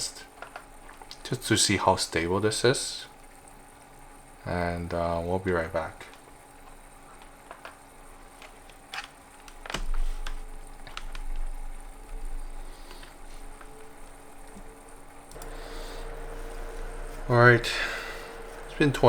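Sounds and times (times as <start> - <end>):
computer pump and fans whirring: 0.0 - 19.0
low rumble: 12.1 - 19.0.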